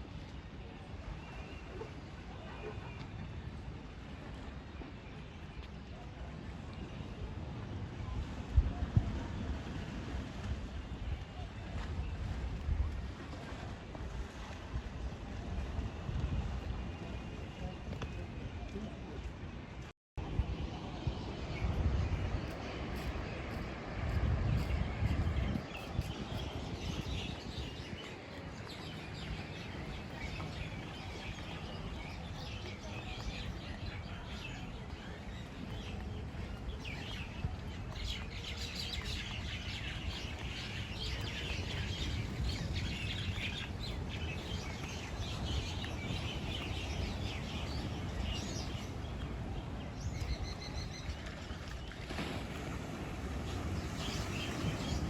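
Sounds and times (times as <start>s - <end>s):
wind buffeting microphone: 6.4s - 55.0s.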